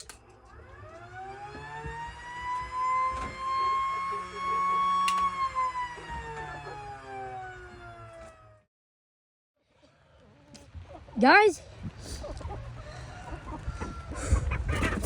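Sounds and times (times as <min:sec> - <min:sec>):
warning siren wailing: 0:00.5 - 0:08.7.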